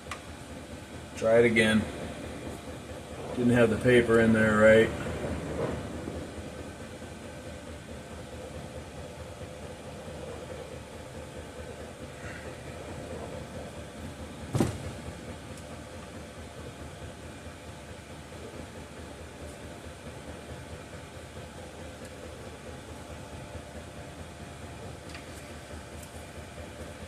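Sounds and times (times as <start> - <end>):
machine hum and hiss: 0.0 - 27.0
sharp knock: 14.5 - 15.0.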